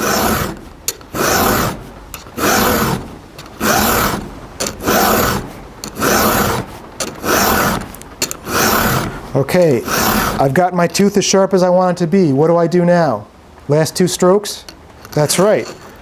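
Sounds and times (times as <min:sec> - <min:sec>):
file rasping on chain tooth: 0:00.0 - 0:10.6.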